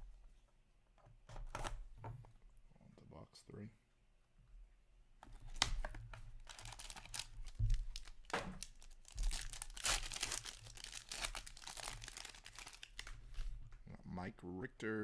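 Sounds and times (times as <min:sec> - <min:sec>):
plastic wrapping crinkling and tearing: 0:05.4 - 0:13.8.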